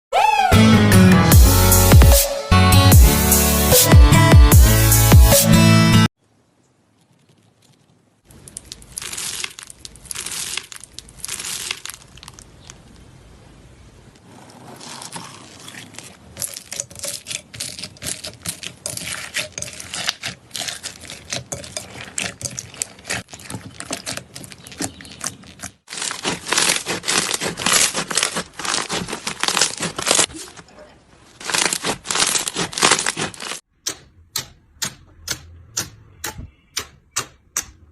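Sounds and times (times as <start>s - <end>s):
slime crackling and popping: 8.3s - 12.8s, 14.8s - 30.3s, 31.4s - 33.6s.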